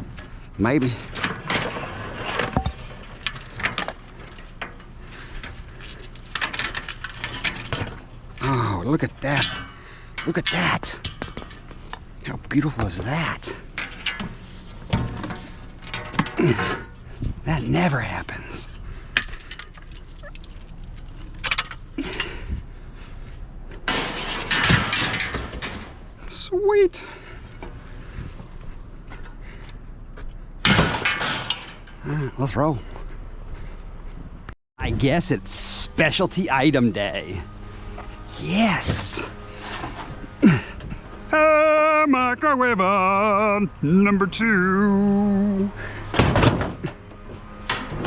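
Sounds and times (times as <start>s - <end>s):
clatter of objects: 0.0s - 8.7s, 9.3s - 17.3s, 19.1s - 22.6s, 23.8s - 26.1s, 27.2s - 32.0s, 38.8s - 41.1s
hard objects clinking: 19.2s - 22.0s.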